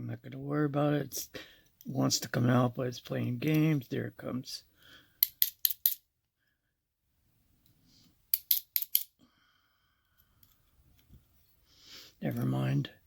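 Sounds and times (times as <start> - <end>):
sharp clicks of hand tools on lock: 5.2 - 6.0, 8.3 - 9.1.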